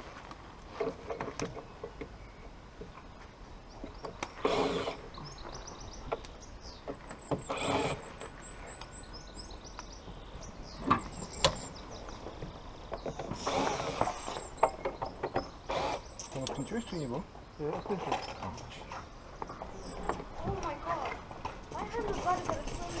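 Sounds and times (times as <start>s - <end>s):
birds chirping: 1.5s - 23.0s.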